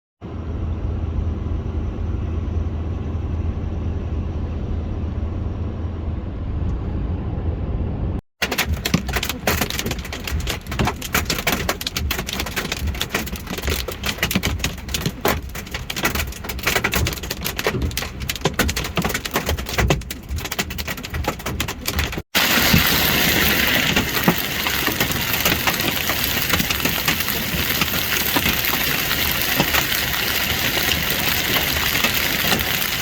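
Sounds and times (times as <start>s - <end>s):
hailstones pelting a vehicle: 8.4s - 33.0s
heavy rain: 8.4s - 33.0s.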